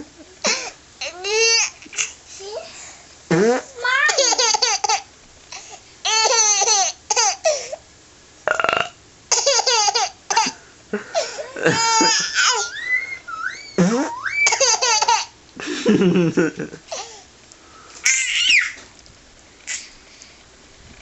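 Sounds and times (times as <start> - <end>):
baby laughing: 0.0 - 2.2, 3.3 - 7.8, 9.3 - 17.2, 18.0 - 18.8
imitation fart noise: 3.3 - 3.8, 8.4 - 9.0, 13.4 - 14.4.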